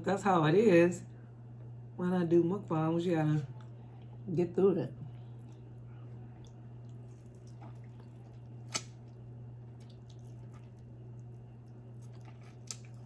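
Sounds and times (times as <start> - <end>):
steady low hum: 0.0 - 13.0
wet eating sounds: 5.0 - 13.0.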